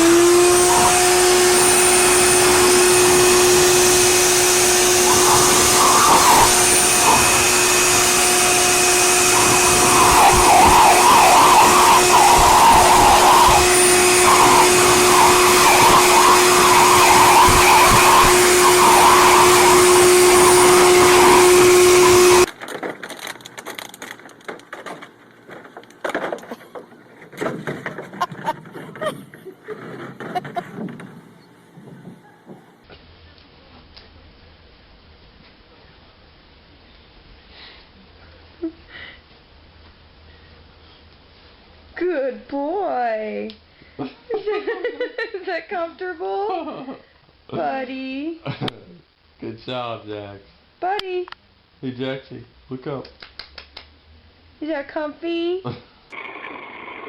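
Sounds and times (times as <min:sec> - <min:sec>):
electric blower motor humming: 0:00.0 - 0:22.6
rushing air: 0:01.4 - 0:22.5
faint scattered noises: 0:22.5 - 0:56.2.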